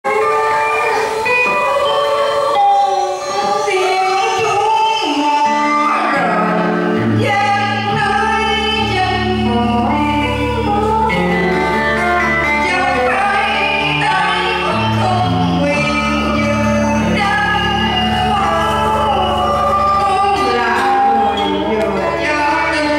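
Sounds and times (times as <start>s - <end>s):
instrumental accompaniment: 0.0s - 22.9s
person singing: 0.0s - 22.9s
bass line: 5.9s - 22.9s.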